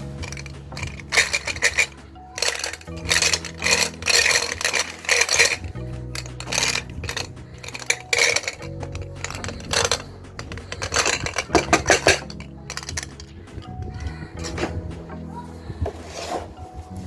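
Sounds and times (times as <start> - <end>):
glass marbles rattling on track: 0.0 - 14.8
background music: 0.0 - 17.0.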